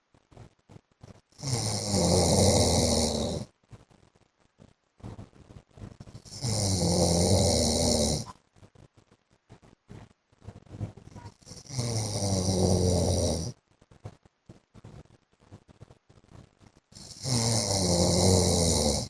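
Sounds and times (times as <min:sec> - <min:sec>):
man snoring: 0:01.4 - 0:03.5, 0:06.2 - 0:08.3, 0:11.4 - 0:13.6, 0:17.0 - 0:19.0.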